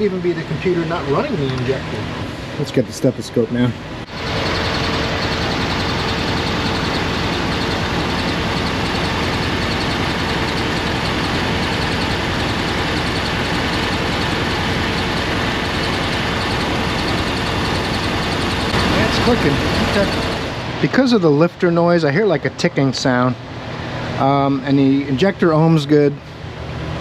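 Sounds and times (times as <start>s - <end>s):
engine running: 0.0s - 25.4s
engine ticking: 4.1s - 20.6s.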